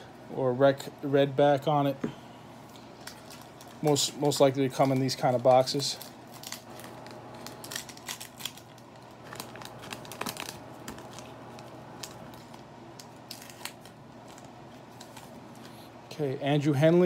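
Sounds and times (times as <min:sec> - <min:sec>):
air conditioner hum: 0:00.0 - 0:17.0
cards and wrapper crinkling: 0:02.7 - 0:15.9.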